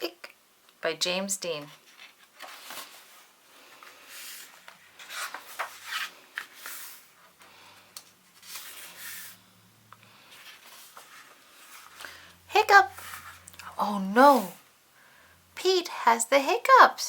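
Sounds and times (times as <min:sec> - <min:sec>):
book pages rustling: 0:01.6 - 0:09.4, 0:10.2 - 0:13.5.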